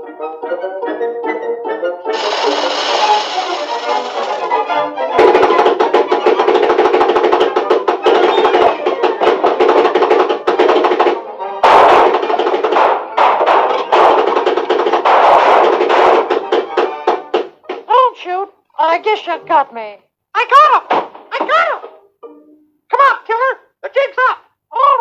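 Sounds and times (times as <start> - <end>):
cartoon music with drums: 0.4 - 17.8.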